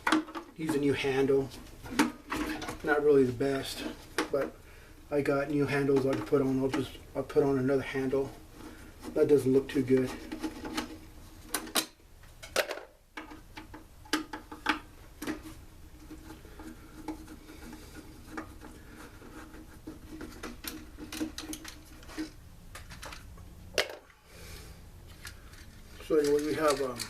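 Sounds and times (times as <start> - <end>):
faint steady hum: 0.0 - 27.0
tools and parts clinking: 25.1 - 27.0.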